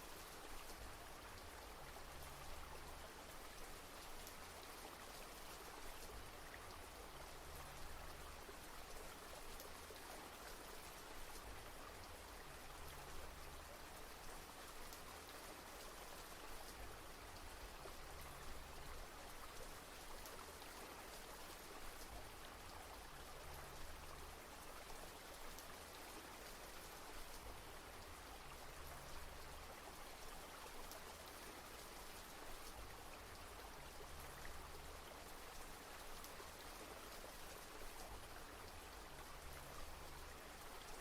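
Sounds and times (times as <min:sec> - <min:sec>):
faint rain falling: 0:00.0 - 0:41.0.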